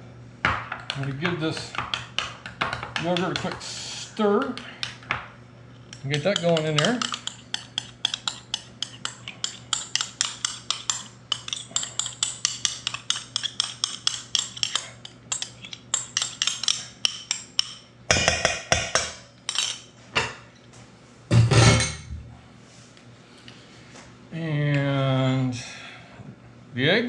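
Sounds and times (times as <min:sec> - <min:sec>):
spoon stirring yogurt container: 0:00.7 - 0:05.1, 0:05.7 - 0:17.8.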